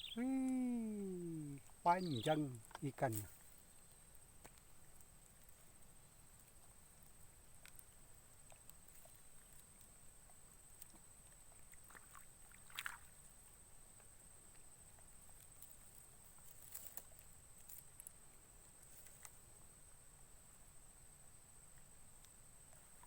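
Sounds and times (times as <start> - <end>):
faint ticks: 2.5 - 19.7, 21.6 - 23.0.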